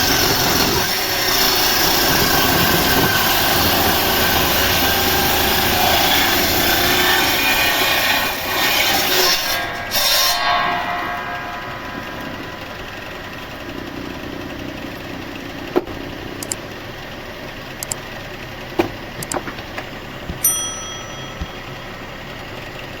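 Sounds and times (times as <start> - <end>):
sawmill machinery running: 0.0 - 23.0
metal clank: 9.3 - 13.9
knocks and clunks: 18.8 - 20.5.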